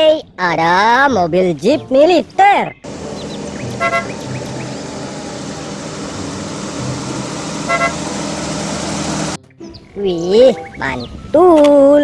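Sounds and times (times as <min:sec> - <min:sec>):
steady rushing noise: 0:02.8 - 0:09.4
low hum: 0:02.8 - 0:11.8
car horn toots: 0:02.9 - 0:09.4.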